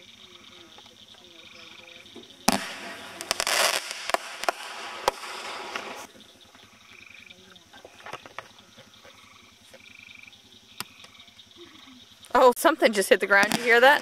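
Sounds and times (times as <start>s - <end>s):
frogs trilling: 0.0s - 3.8s, 4.4s - 14.0s
fireworks crackling and banging: 2.0s - 6.7s, 12.3s - 14.0s.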